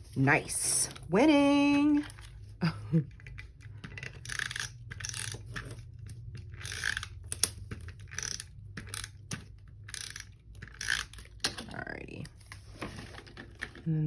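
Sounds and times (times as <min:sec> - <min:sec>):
paper rustling: 0:12.4 - 0:13.7.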